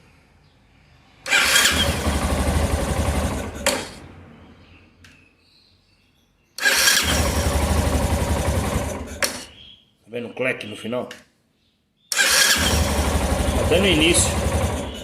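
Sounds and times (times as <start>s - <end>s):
motorcycle engine starting: 1.2s - 4.1s, 6.6s - 9.5s, 12.1s - 15.0s
starter motor clicking: 1.3s - 4.0s, 6.6s - 9.4s, 12.1s - 15.0s.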